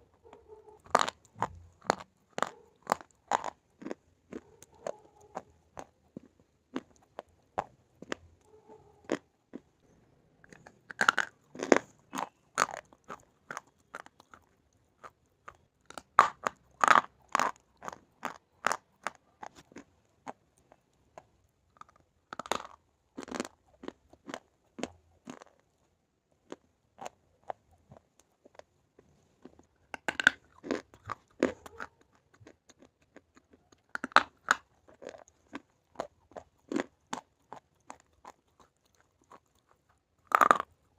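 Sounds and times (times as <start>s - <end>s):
person crunching while chewing: 0.3s - 9.7s, 10.4s - 40.9s.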